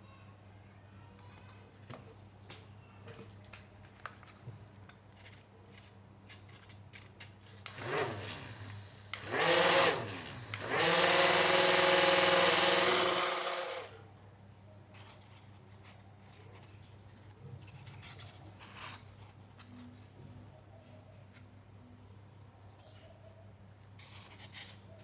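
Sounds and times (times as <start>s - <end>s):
electric motor with propeller revving: 7.7s - 13.9s.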